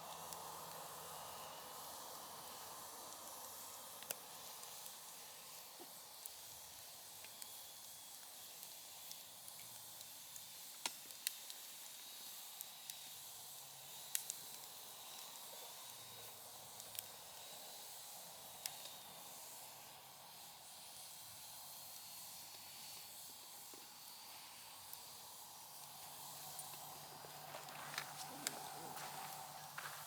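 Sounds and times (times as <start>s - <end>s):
firewood crackling: 10.7s - 19.6s, 22.2s - 30.0s
fire popping: 24.9s - 30.0s.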